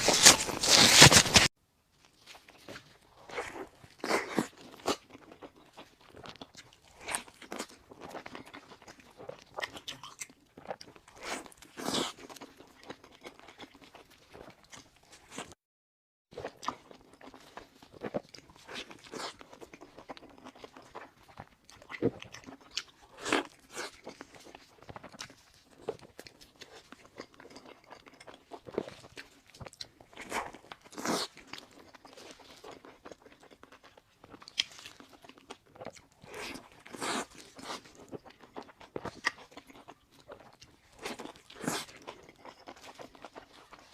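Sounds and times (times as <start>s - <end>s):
person eating a burger: 0.0s - 1.5s, 16.4s - 43.9s
wet chewing and smacking: 2.1s - 15.6s, 16.4s - 43.9s.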